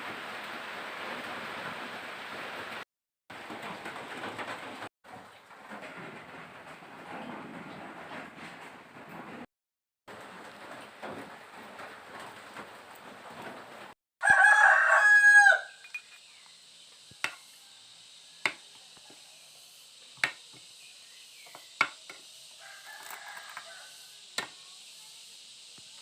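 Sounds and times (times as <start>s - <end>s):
rooster crowing: 14.2s - 15.9s, 22.5s - 24.3s
high insect-like hiss: 15.6s - 26.0s.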